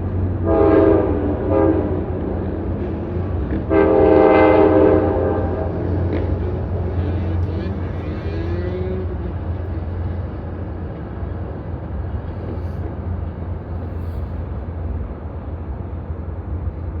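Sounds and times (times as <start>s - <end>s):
low rumble of city noise: 0.0s - 17.0s
train horn blast: 0.4s - 9.2s.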